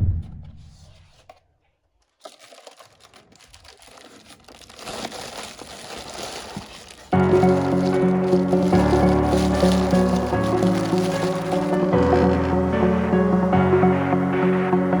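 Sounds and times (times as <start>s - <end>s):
packaging crinkling and tearing: 2.0s - 13.5s.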